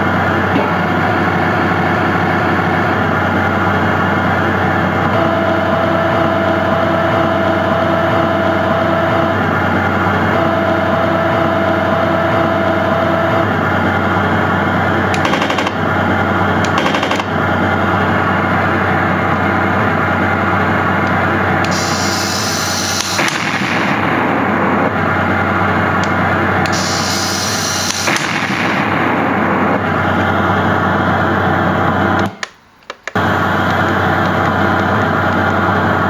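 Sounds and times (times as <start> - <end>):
simulated tank engine rumble: 0.0 - 32.3, 33.2 - 36.0
steady whine: 0.0 - 36.0
gunfire sound effects: 15.2 - 17.8, 21.7 - 24.4
high hiss: 21.7 - 24.0, 26.1 - 28.8.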